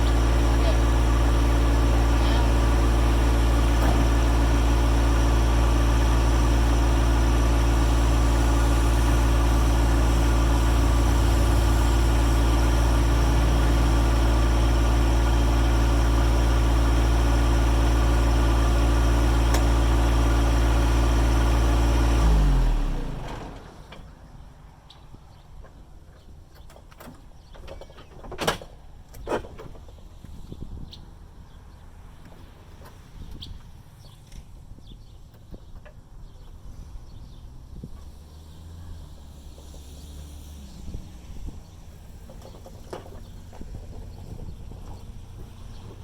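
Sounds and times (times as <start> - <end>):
engine winding down: 0.0 - 24.1, 37.1 - 46.0
diesel engine running: 0.0 - 27.2, 31.1 - 46.0.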